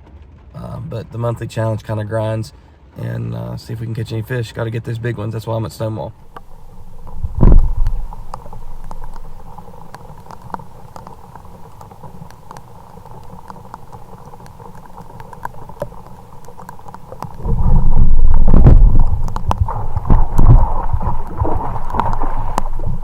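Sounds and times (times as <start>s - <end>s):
faint steady hum: 5.2s - 23.0s
raindrops ticking: 6.0s - 23.0s
water washing: 6.1s - 23.0s
loud low rumble: 6.4s - 9.2s.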